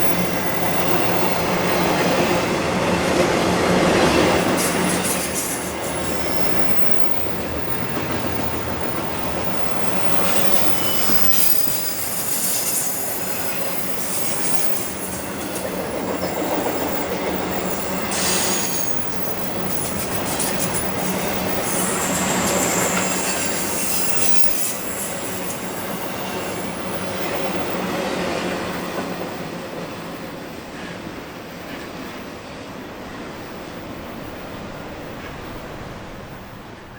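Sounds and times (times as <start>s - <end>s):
train wheels clattering: 0.2s - 27.4s
wheel squeal: 4.2s - 7.3s, 9.4s - 27.4s.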